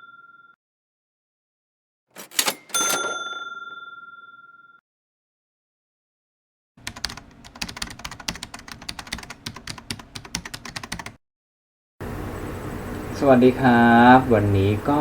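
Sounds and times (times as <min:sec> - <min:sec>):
fast computer keyboard typing: 0:06.8 - 0:11.2.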